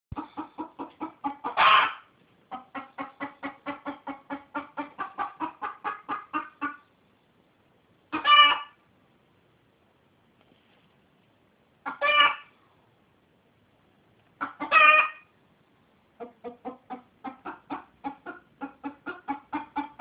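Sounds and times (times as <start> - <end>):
chicken clucking: 0.1 - 6.9, 8.1 - 8.8, 11.8 - 12.6, 14.4 - 15.4, 16.1 - 20.0
chicken squawk: 0.2 - 6.9, 8.1 - 8.8, 11.8 - 12.6, 14.4 - 15.4, 16.2 - 20.0.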